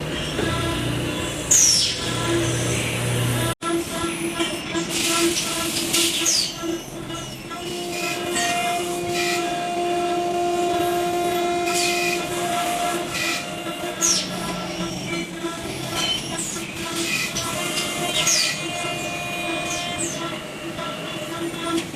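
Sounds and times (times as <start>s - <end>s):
machine whine: 0.0s - 21.9s.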